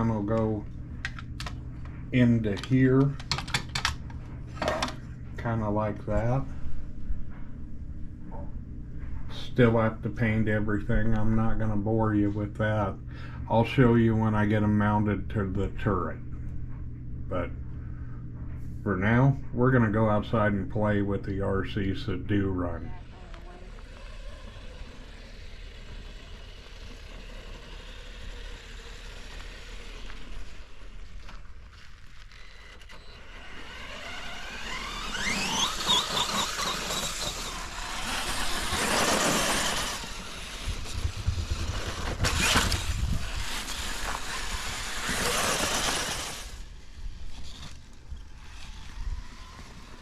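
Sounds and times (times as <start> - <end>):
rc car motor whine: 22.6 - 50.0.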